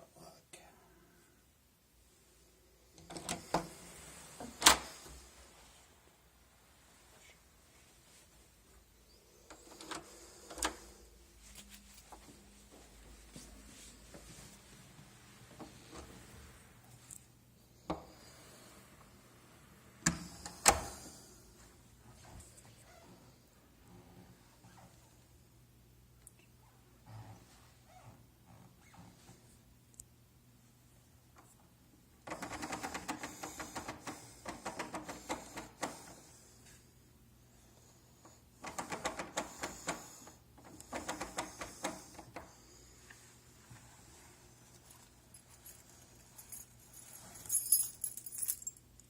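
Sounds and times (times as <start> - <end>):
door lock clicking and rattling: 38.6 - 40.0.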